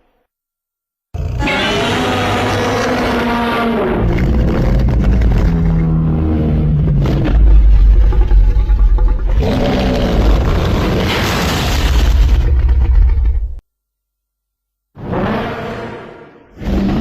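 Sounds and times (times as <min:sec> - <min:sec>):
deep rumble: 0:04.0 - 0:13.6.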